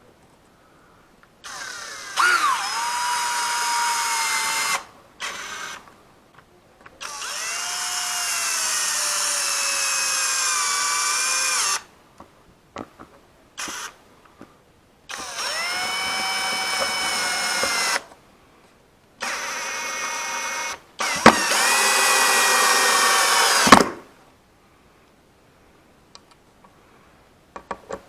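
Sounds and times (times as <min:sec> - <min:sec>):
electric drill boring into wall: 0:01.4 - 0:05.8, 0:07.0 - 0:11.9, 0:13.6 - 0:13.9, 0:15.1 - 0:18.0, 0:19.2 - 0:23.8.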